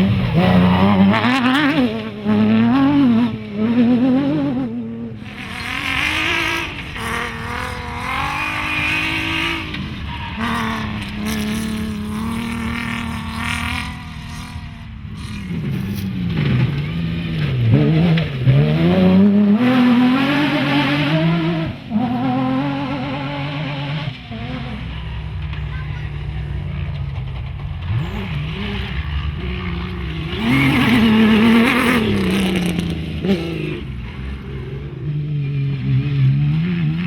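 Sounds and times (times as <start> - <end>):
rally car engine at full throttle: 0.0 - 37.0.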